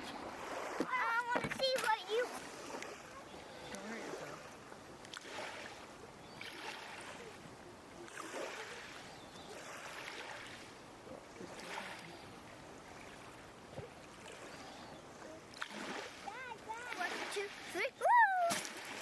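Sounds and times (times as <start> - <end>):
creek water splashing: 0.0 - 19.0.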